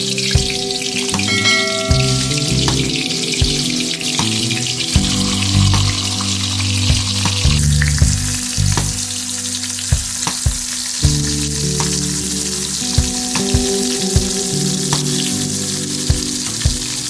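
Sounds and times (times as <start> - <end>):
food sizzling in oil: 0.0 - 17.0
soft background music: 0.0 - 17.0.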